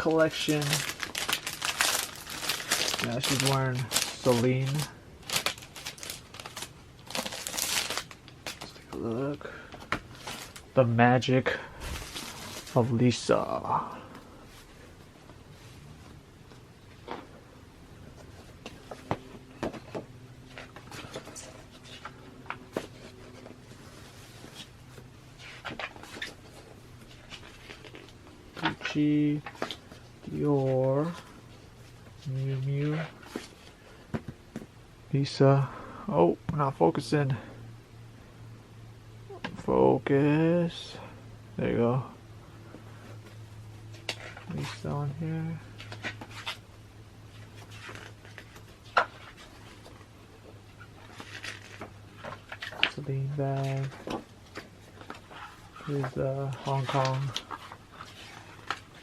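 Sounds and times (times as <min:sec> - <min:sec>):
magazine pages turning: 0:00.0 - 0:09.0, 0:09.9 - 0:10.8, 0:11.7 - 0:13.6, 0:18.2 - 0:31.3, 0:47.3 - 0:50.1, 0:50.7 - 0:59.0
faint steady hum: 0:00.0 - 0:59.0.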